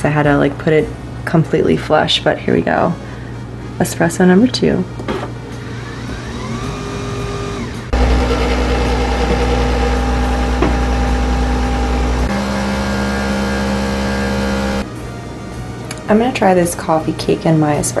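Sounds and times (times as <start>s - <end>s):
coffee machine motor humming: 5.6s - 14.9s.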